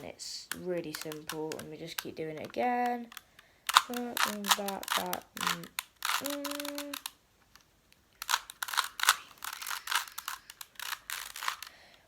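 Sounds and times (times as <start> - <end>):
puzzle cube clicking: 0.0 - 12.0
person humming: 5.4 - 7.1.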